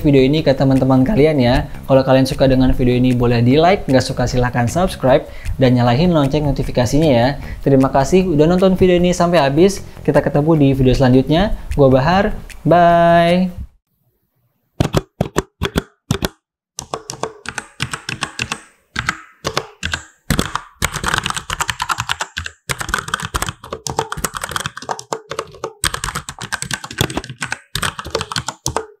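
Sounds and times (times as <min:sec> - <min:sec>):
mechanical keyboard typing: 0:14.8 - 0:29.0.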